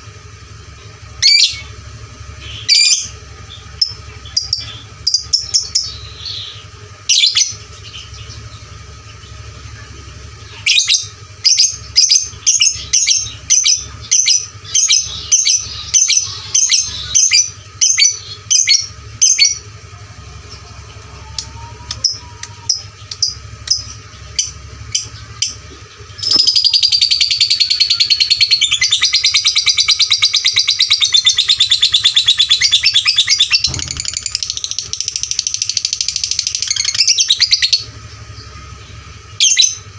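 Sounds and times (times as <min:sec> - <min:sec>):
lovebird chirping and chattering: 0:00.8 - 0:19.7, 0:20.4 - 0:39.9.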